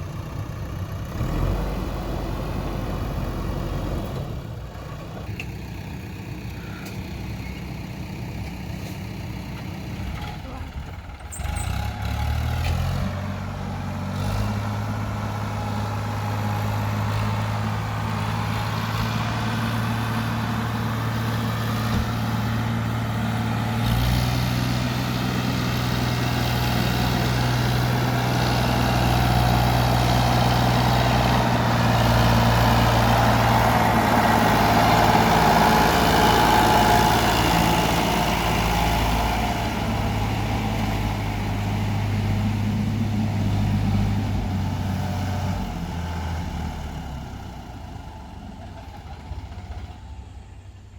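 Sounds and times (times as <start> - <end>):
heavy machinery diesel engine: 0.0 - 50.9.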